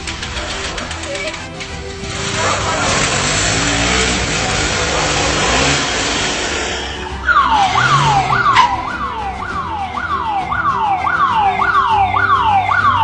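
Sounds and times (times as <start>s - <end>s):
siren yelping: 6.8s - 13.0s.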